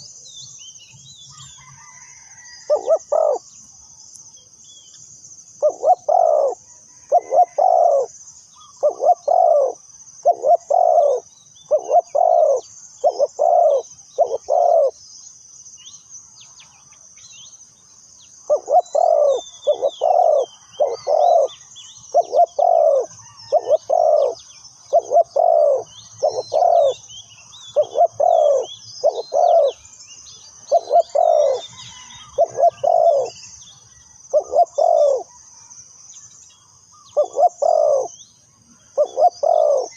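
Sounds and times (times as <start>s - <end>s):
dove cooing: 2.6s - 3.5s, 5.6s - 15.0s, 18.4s - 27.1s, 27.7s - 29.8s, 30.6s - 33.4s, 34.3s - 35.4s, 37.0s - 38.2s, 39.0s - 39.9s
small birds chirping: 2.7s - 39.9s.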